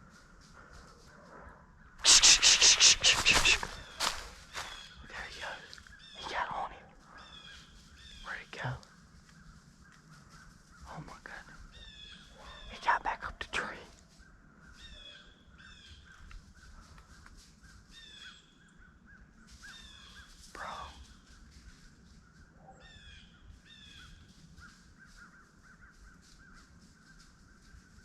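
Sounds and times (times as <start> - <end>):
birds calling: 2.0 - 13.1
small bird chirps: 10.8 - 13.3.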